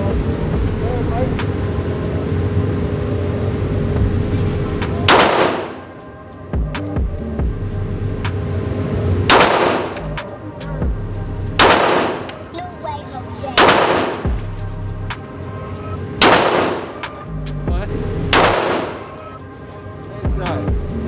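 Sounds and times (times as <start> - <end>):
handgun shots with echo: 5.0 - 5.8, 9.3 - 10.2, 11.6 - 12.4, 13.6 - 14.3, 16.2 - 17.2, 18.3 - 19.1.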